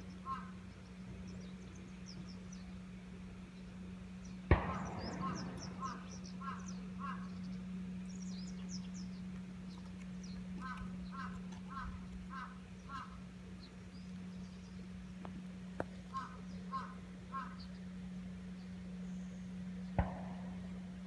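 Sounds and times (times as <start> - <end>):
small birds chirping faintly: 0.0 - 21.0
steady low hum: 0.0 - 21.0
crow cawing: 0.2 - 0.5, 5.2 - 7.3, 10.6 - 13.2, 16.1 - 17.6.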